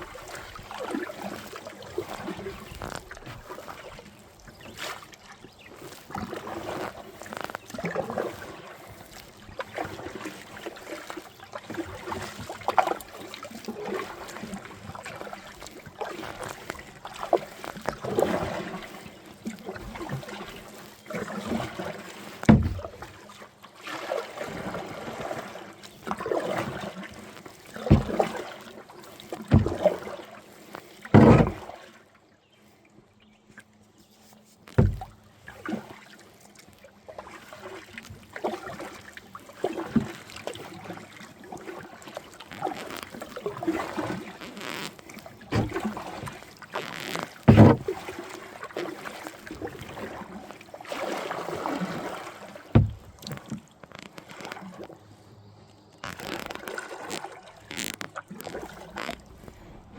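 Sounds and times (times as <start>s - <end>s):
paddle splashes: 0.0s - 59.9s
water sloshing around hull: 0.0s - 59.9s
sharp knocks on kayak: 22.4s - 23.1s, 27.8s - 28.5s, 29.5s - 30.0s, 31.1s - 31.8s, 34.7s - 35.2s, 45.5s - 48.1s, 52.7s - 53.6s.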